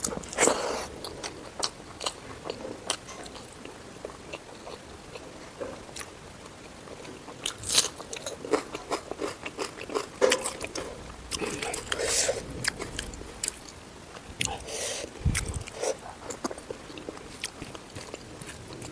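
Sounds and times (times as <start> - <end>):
person chewing food: 0.0 - 18.9
mouth clicks and crunches: 7.0 - 18.9.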